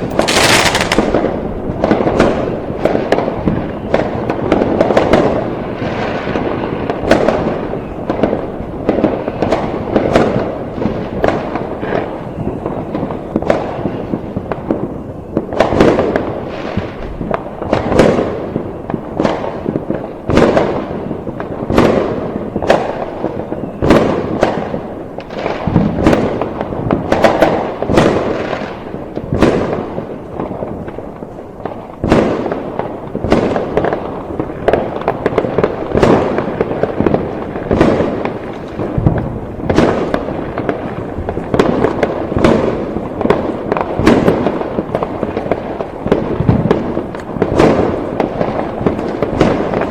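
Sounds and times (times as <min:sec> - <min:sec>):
fireworks sharp bangs: 0:00.0 - 0:49.9.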